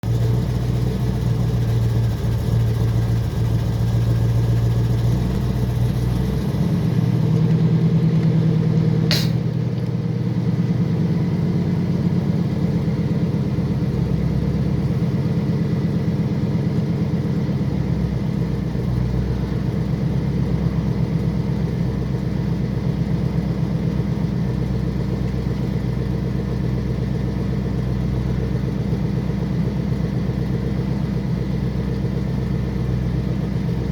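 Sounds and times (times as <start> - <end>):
car engine idling: 0.0 - 33.9
sharp click: 9.1 - 9.9.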